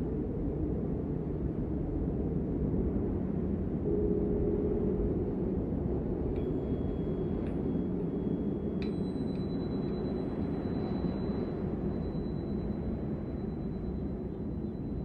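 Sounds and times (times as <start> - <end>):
high bell-like chimes: 8.2 - 14.0.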